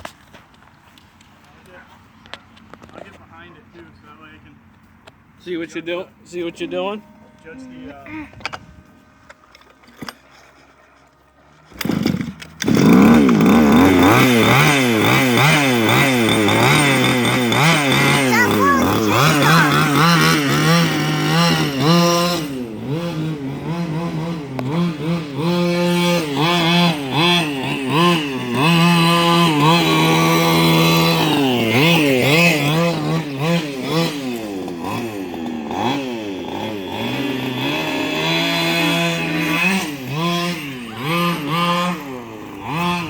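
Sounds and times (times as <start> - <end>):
two-stroke engine revving: 11.5 - 43.0.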